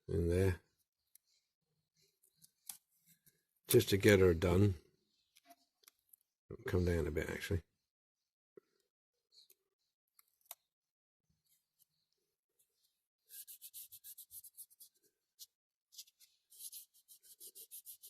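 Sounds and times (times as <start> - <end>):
tape rubbing strokes: 13.2 - 18.0.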